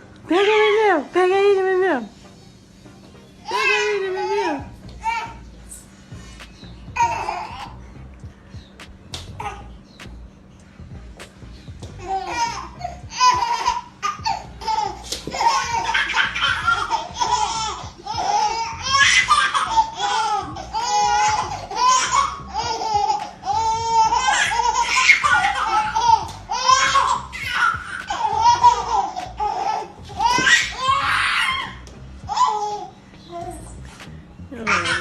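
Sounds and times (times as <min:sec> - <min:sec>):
baby laughing: 0:03.4 - 0:05.5, 0:06.4 - 0:09.8, 0:12.0 - 0:34.0, 0:34.6 - 0:35.0.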